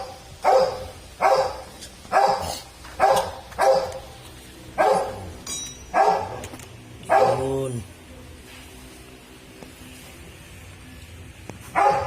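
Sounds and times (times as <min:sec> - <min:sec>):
dog barking: 0:00.0 - 0:04.1, 0:04.8 - 0:06.4, 0:07.0 - 0:07.5, 0:11.7 - 0:12.0.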